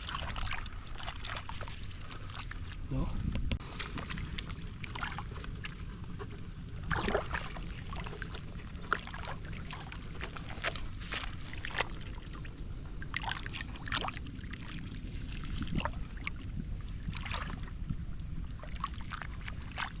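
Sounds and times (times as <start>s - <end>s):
steady low rumble: 0.0s - 19.8s
water and mud squelching: 0.0s - 20.0s.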